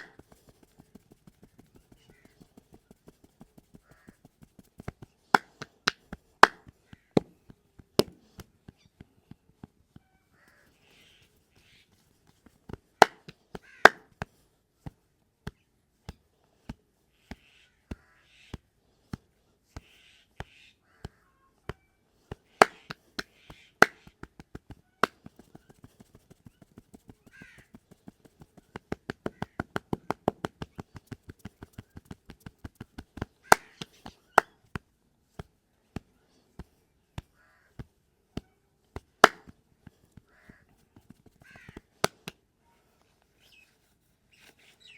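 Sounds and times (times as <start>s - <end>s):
hand slaps on skin: 0.0s - 8.5s, 12.4s - 19.2s, 19.8s - 27.1s, 27.9s - 34.8s, 35.4s - 40.0s.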